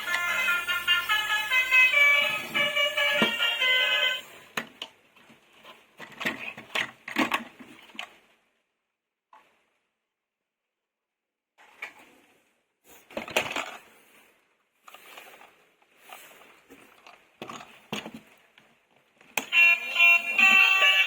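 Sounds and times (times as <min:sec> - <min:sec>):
electronic beeping jingle: 0:00.0 - 0:04.2, 0:19.5 - 0:21.0
plastic toys and packaging handled: 0:00.0 - 0:08.4, 0:12.9 - 0:14.1, 0:14.8 - 0:21.0.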